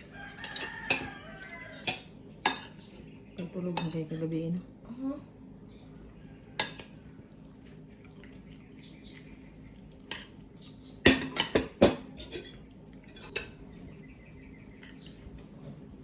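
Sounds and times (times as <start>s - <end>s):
cutlery and dishes clinking: 0.0s - 4.0s, 6.6s - 7.0s, 11.0s - 13.6s.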